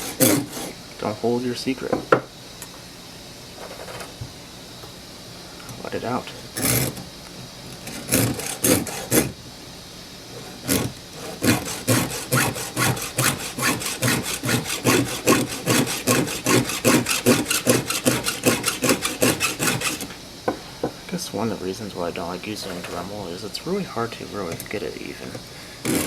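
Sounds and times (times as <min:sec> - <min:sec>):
file rasping on saw chain: 0:00.0 - 0:00.8, 0:06.6 - 0:07.0, 0:07.9 - 0:09.4, 0:10.5 - 0:20.1.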